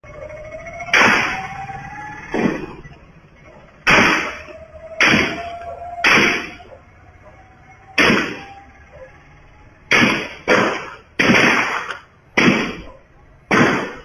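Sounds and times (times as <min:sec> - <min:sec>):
sharp impacts: 0:00.2 - 0:07.1, 0:07.7 - 0:14.0.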